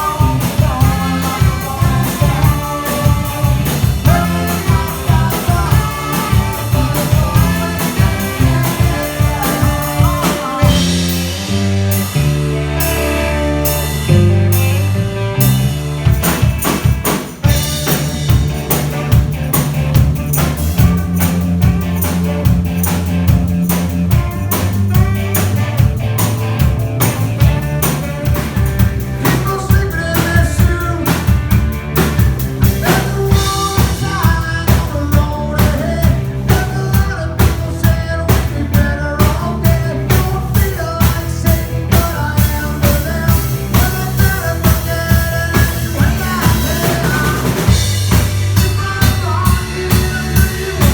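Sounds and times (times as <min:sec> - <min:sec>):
bass line: 0:00.0 - 0:50.9
drum kit beat with rimshots: 0:00.0 - 0:50.9
live band playing: 0:00.0 - 0:50.9.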